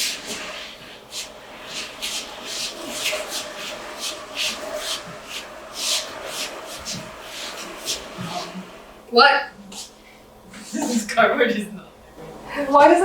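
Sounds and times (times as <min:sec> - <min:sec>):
cardboard scraping across floor: 0:00.0 - 0:08.9.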